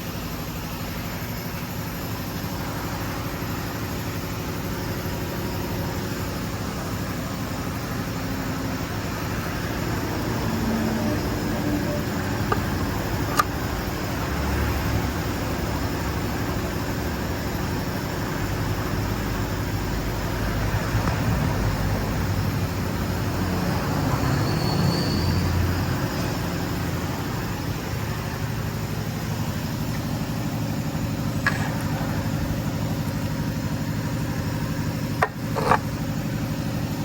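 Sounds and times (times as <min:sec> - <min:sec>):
car engine running: 0:00.0 - 0:24.4, 0:25.5 - 0:37.0
sharp engine knock: 0:35.0 - 0:36.0.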